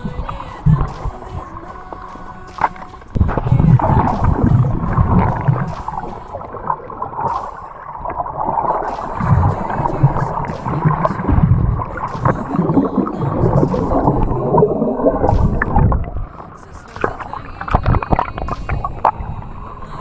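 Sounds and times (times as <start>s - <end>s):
surges of low rumble: 0.0s - 16.3s
water sloshing and gurgling: 0.0s - 20.0s.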